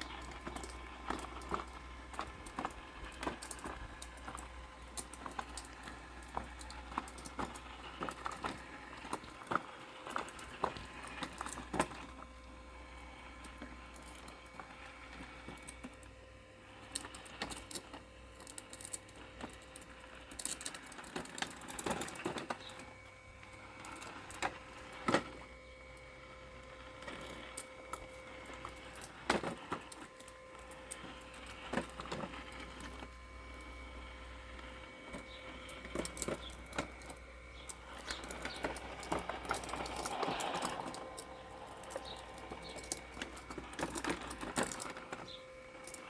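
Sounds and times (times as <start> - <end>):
robotic lawn mower humming: 0.0 - 46.0.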